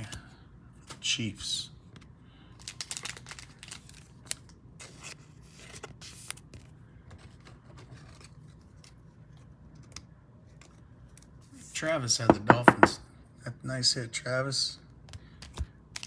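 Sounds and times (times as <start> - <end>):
trading cards and wrappers handled: 1.9 - 11.4, 15.2 - 16.0.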